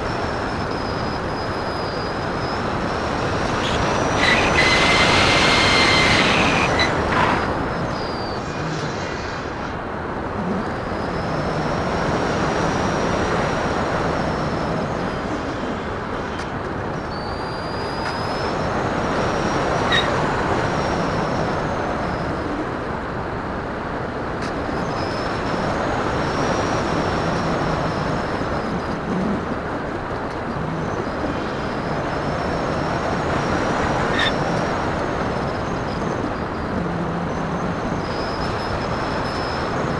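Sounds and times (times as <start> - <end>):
electric motor faint high whine: 0.1 - 9.2.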